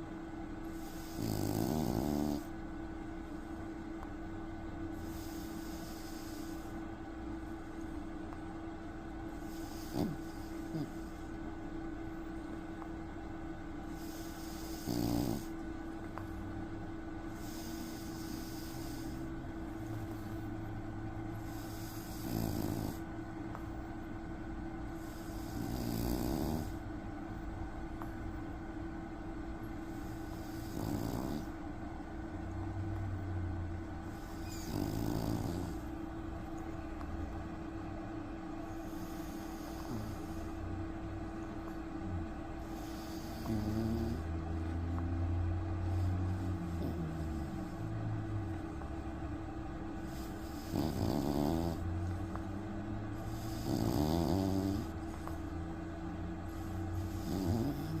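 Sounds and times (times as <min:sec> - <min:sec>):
steady background hum: 0:00.0 - 0:58.0
dog snoring: 0:00.6 - 0:02.7, 0:04.9 - 0:06.9, 0:09.3 - 0:11.5, 0:13.8 - 0:16.4, 0:17.2 - 0:23.8, 0:24.8 - 0:26.9, 0:29.6 - 0:31.7, 0:33.0 - 0:37.2, 0:38.3 - 0:40.7, 0:41.5 - 0:49.0, 0:49.7 - 0:58.0
low breathing: 0:04.9 - 0:07.1, 0:09.3 - 0:11.6, 0:13.8 - 0:16.5, 0:17.2 - 0:24.0, 0:32.5 - 0:51.0, 0:54.5 - 0:58.0.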